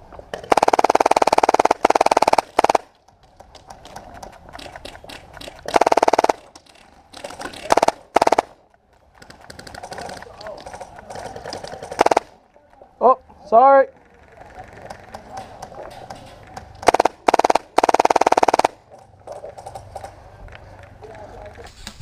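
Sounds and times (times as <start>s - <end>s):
airsoft rifle firing bursts: 0.5s - 2.9s, 5.6s - 6.6s, 7.2s - 8.6s, 11.7s - 12.4s, 16.8s - 18.8s.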